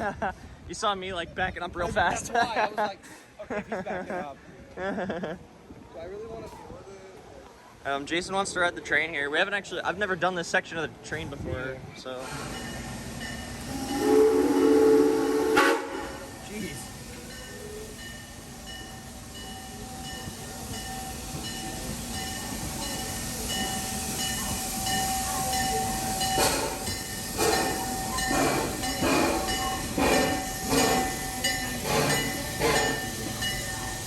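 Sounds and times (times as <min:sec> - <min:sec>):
amusement park train whine: 0:12.1 - 0:34.0.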